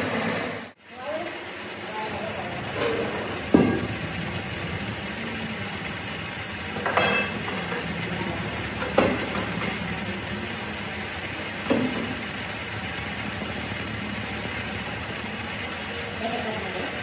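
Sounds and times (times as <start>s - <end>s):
metalworking machine humming: 0.0s - 17.0s
sharp metallic clank: 6.8s - 7.6s.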